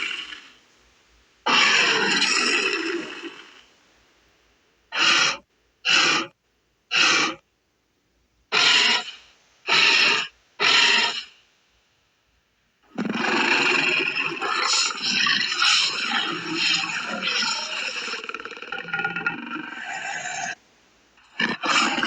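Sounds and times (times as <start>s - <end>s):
harsh breathy creature calls: 1.5s - 3.7s, 4.9s - 7.4s, 8.5s - 11.4s, 12.9s - 20.6s, 21.2s - 22.0s.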